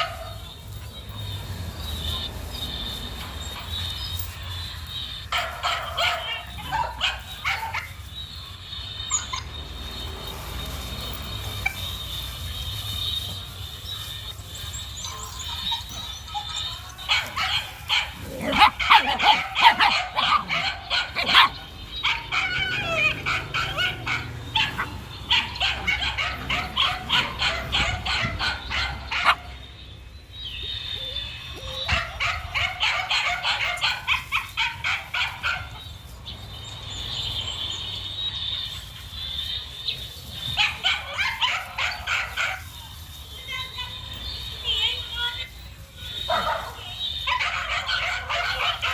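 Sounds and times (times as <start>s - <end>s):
dog yapping: 15.0s - 29.6s, 46.3s - 48.9s.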